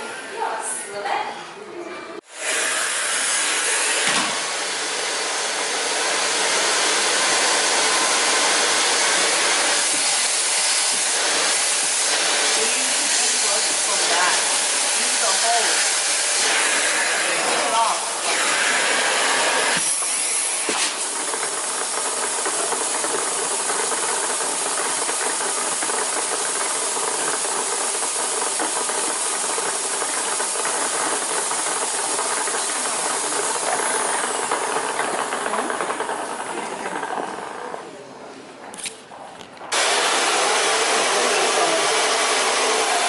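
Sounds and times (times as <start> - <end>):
vacuum cleaner running: 0.0 - 0.6, 2.2 - 38.2, 39.7 - 43.0.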